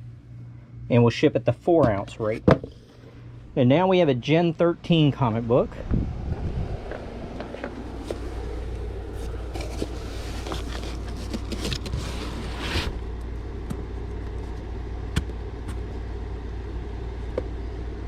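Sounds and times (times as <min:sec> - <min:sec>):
steady low hum: 0:00.0 - 0:18.0
rustling and scraping packaging: 0:07.5 - 0:13.2.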